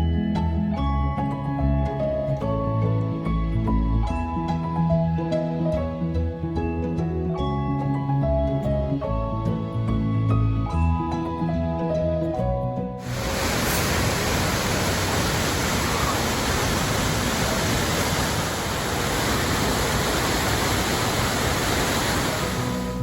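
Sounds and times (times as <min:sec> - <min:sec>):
waterfall rushing: 0:13.0 - 0:23.0.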